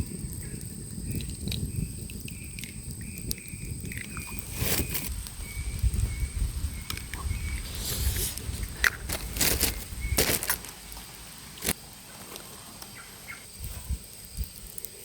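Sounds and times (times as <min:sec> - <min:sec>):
sharp crackles and clicks: 0:01.1 - 0:06.0, 0:06.8 - 0:12.9, 0:13.5 - 0:15.0
loud rustle: 0:04.4 - 0:05.1, 0:07.6 - 0:12.4.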